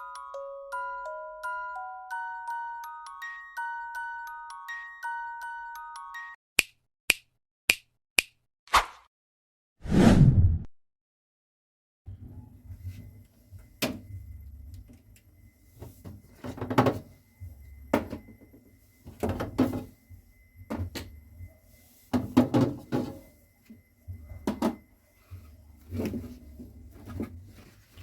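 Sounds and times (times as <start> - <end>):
faint low hum: 12.1 - 28.0
objects knocking and clattering: 15.8 - 17.2, 17.9 - 20.0, 22.1 - 23.3, 24.3 - 24.9
doors or drawers opening and shutting: 15.9 - 17.2, 19.1 - 20.0, 22.1 - 23.3.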